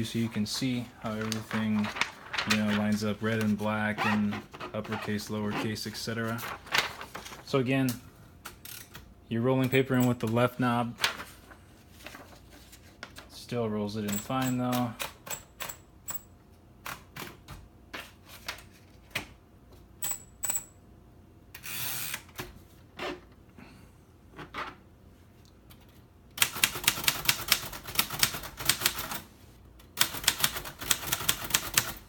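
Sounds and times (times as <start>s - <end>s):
typewriter rasping sound: 30.0s - 32.0s.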